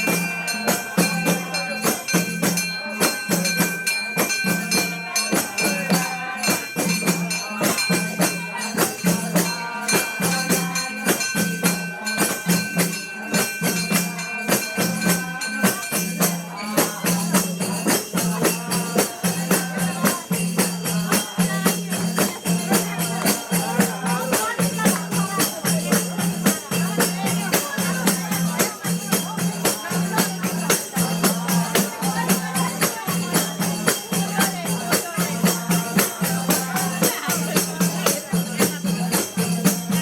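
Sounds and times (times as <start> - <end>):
low drum beat: 0.0 - 40.0
rapid percussion strikes: 0.0 - 40.0.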